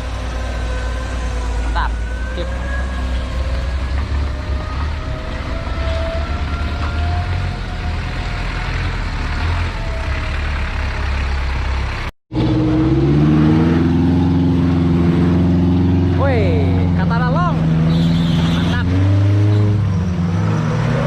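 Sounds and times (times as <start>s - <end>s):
engine deep rumble: 0.0s - 21.0s
engine revving up: 12.3s - 21.0s.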